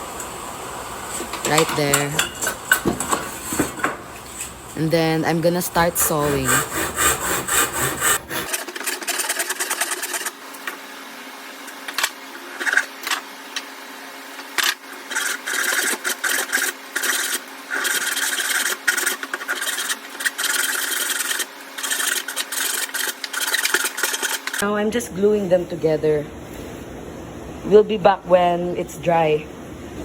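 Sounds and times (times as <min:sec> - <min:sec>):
hand saw cutting wood: 0:05.5 - 0:10.3, 0:15.1 - 0:24.6.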